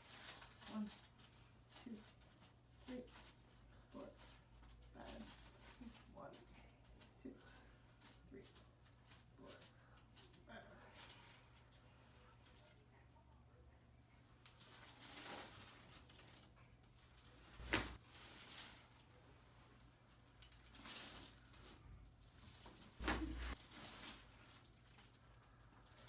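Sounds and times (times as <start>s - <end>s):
body rustling on fabric: 17.0s - 25.0s.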